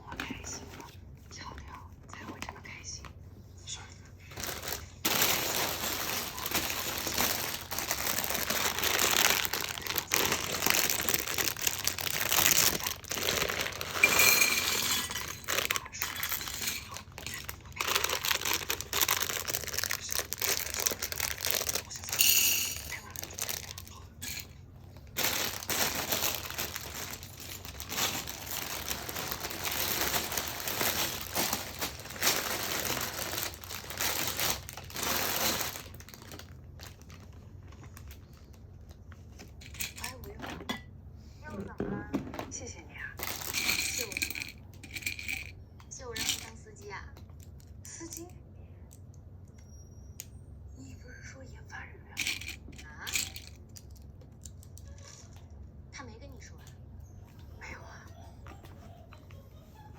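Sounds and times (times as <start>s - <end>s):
plastic bags crinkling: 4.3s - 40.2s, 43.2s - 45.5s, 46.2s - 46.5s, 52.2s - 55.3s
plastic pieces clicking and clattering: 4.4s - 24.5s, 25.2s - 37.0s, 43.2s - 45.5s, 46.2s - 46.6s, 52.2s - 55.2s.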